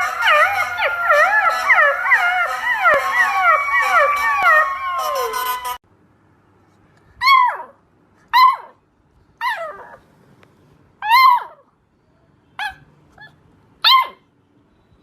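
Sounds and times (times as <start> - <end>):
puppies howling: 0.0 - 5.8.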